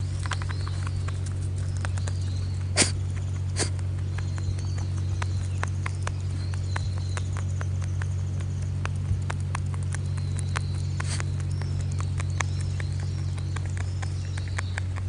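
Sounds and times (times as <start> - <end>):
steady low hum: 0.0 - 15.0
rabbit sneezing: 2.6 - 3.9.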